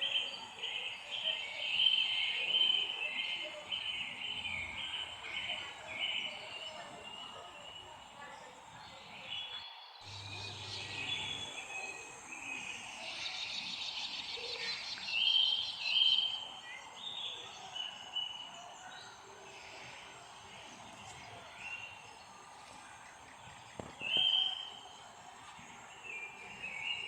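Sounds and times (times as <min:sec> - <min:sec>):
birds chirping and singing: 0:00.0 - 0:27.0
outdoor hiss: 0:10.1 - 0:27.0.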